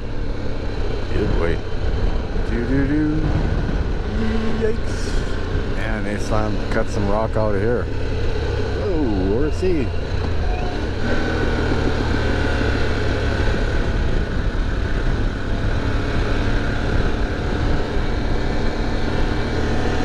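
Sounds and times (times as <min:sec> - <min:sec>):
motorcycle engine running: 0:00.0 - 0:20.0
wind noise on microphone: 0:01.7 - 0:05.8, 0:13.3 - 0:19.4.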